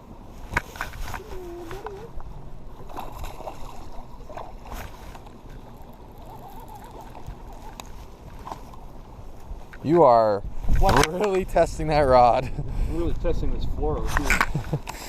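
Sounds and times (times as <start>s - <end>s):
water sloshing against hull: 0.1s - 9.8s.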